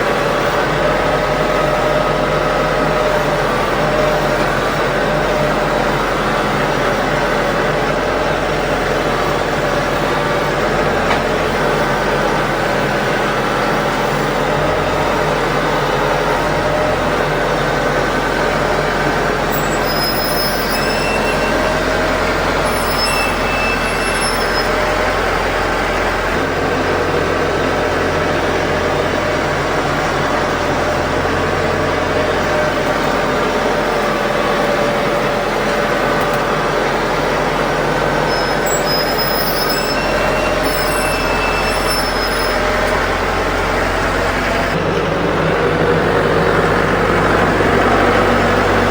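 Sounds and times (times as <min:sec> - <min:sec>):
diesel tractor engine running: 0:00.0 - 0:48.9
high-pitched squeaks: 0:19.6 - 0:25.1, 0:38.2 - 0:43.2.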